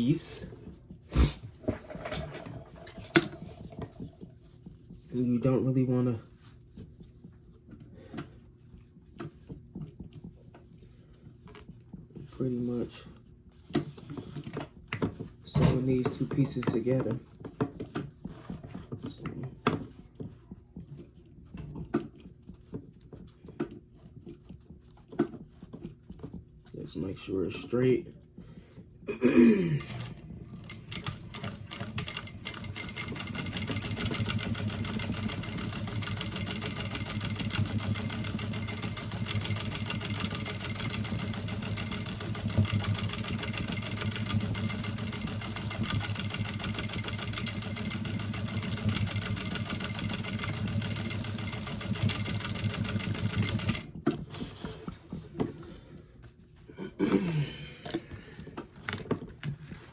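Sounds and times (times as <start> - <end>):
sewing machine stitching: 29.8 - 55.2.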